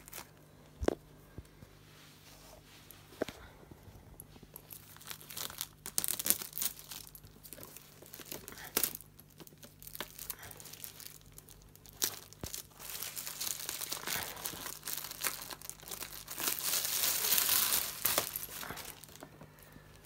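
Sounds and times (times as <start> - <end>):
packaging crinkling and tearing: 0.0 - 0.4, 4.5 - 20.0.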